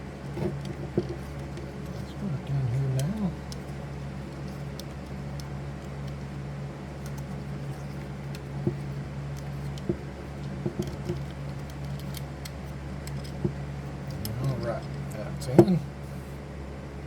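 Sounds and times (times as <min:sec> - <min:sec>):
steady low hum: 0:00.0 - 0:17.0
small metal parts clicking: 0:07.0 - 0:15.2.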